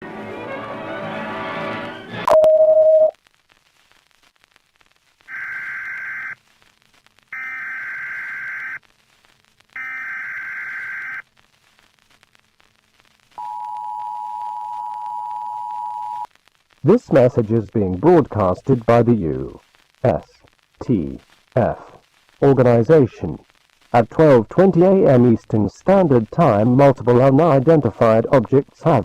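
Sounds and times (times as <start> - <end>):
music: 0.0 - 2.3
click and loud beep: 2.3 - 3.1
two-tone attention signal: 2.3 - 3.1
buzzy data bursts: 5.3 - 6.5.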